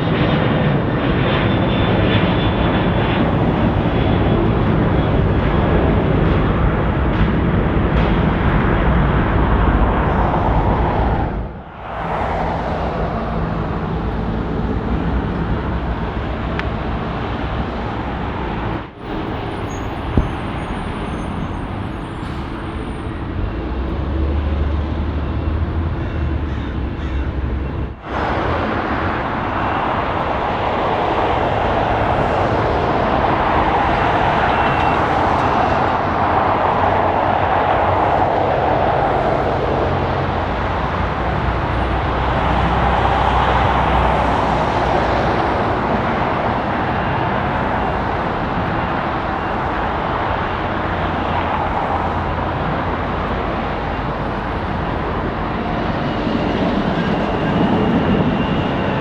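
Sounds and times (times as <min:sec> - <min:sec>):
jet engines running: 0:00.0 - 0:59.0.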